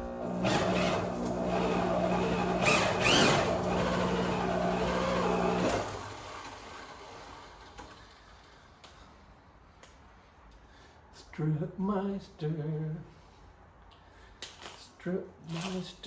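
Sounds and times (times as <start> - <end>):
power drill motor under load: 0.0 - 8.1
drill squeal: 0.3 - 6.0.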